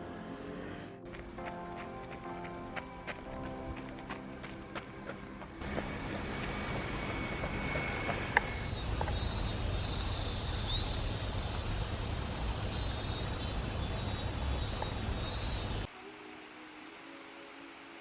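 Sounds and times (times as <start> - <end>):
faint music: 0.0 - 18.0
low outdoor rumble: 2.8 - 15.9
high-pitched insect buzz: 5.6 - 15.9.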